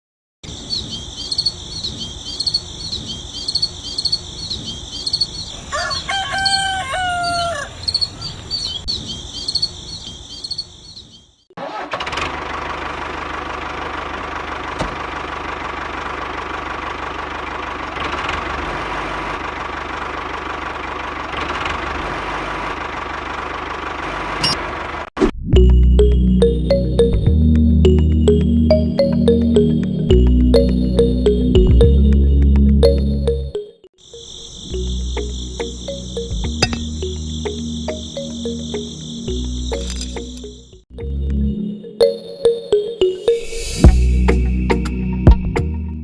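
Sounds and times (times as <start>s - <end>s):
rapid high chirping: 0.6s - 6.0s, 7.8s - 11.3s, 32.9s - 40.8s
rooster crowing: 5.6s - 8.3s.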